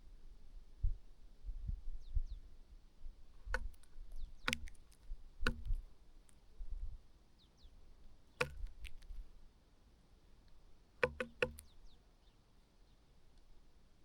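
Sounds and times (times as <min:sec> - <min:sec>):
bird pecking on feeder: 0:03.5 - 0:05.8, 0:08.4 - 0:09.3, 0:11.0 - 0:11.7.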